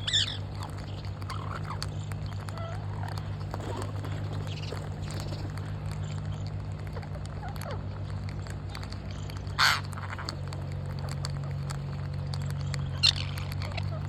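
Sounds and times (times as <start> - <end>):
parrot squawk: 0.0 - 0.7, 9.6 - 10.4
small clicks: 0.0 - 14.0
steady low hum: 0.0 - 14.0.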